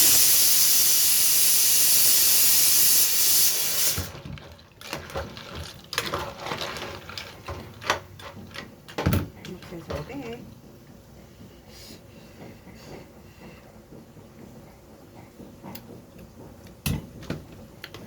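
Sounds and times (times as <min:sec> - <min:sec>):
steam hissing from a pot: 0:00.0 - 0:04.2, 0:11.0 - 0:15.7.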